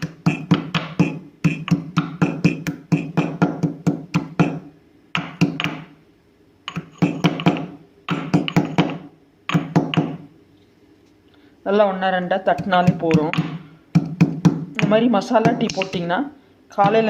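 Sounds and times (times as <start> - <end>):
pestle pounding in a mortar: 0.0 - 4.6, 5.2 - 5.9, 6.7 - 10.2, 12.5 - 15.9, 16.8 - 17.0.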